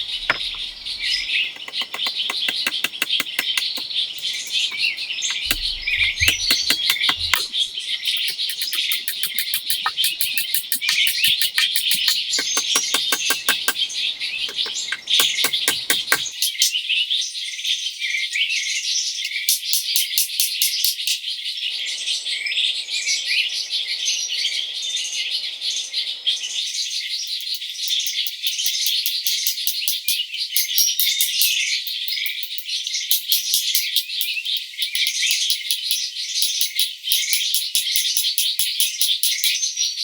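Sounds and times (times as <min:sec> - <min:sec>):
rapid high-pitched pulsing trills: 0:00.0 - 0:16.3
birds chirping and calling: 0:00.0 - 0:16.7, 0:21.7 - 0:26.6.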